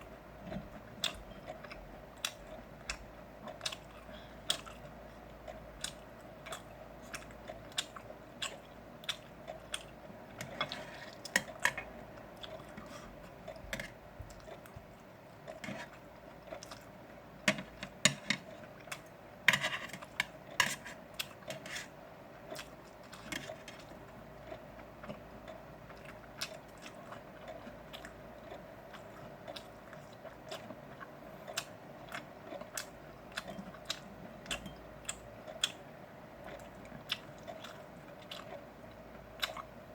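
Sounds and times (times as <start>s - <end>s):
faint steady hum: 0.0s - 39.9s
person chewing and biting: 36.4s - 38.6s.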